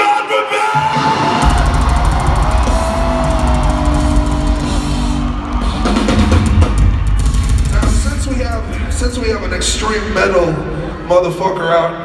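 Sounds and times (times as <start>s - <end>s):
live metal band playing: 0.7s - 11.7s
bass drum and snare drumming: 1.4s - 10.6s.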